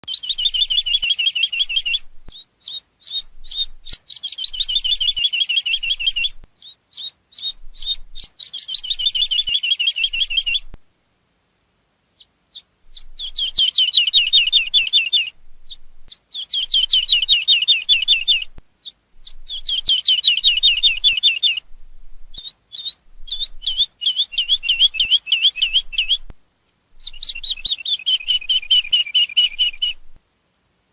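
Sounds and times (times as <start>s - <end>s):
skylark singing: 0.0s - 10.8s, 12.2s - 30.2s.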